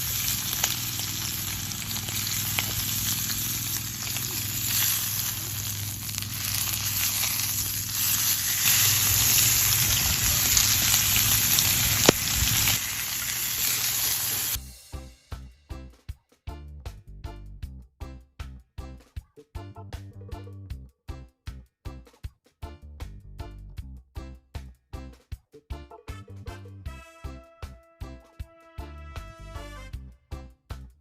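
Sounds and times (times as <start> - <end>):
food sizzling on a grill: 0.0 - 14.6
music with a steady beat: 14.6 - 31.0.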